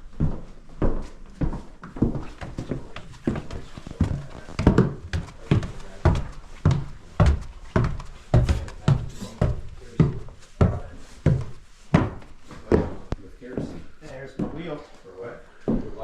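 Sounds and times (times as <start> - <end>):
heavy footsteps walking: 0.0 - 16.0.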